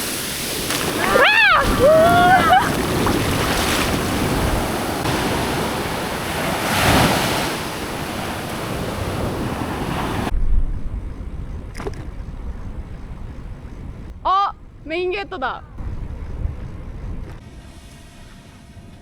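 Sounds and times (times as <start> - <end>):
sea waves washing on shore: 0.0 - 10.3
wind buffeting microphone: 0.0 - 17.7.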